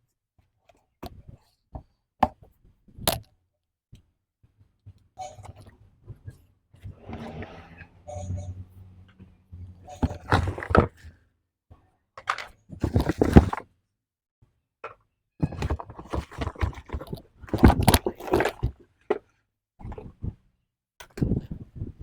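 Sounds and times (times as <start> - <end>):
objects thunking and knocking: 5.3 - 11.1.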